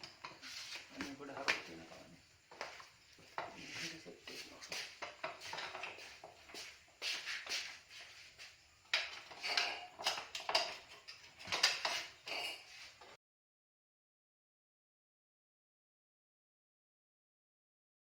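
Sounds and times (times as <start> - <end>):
metal tools clinking and scraping: 3.3 - 13.2.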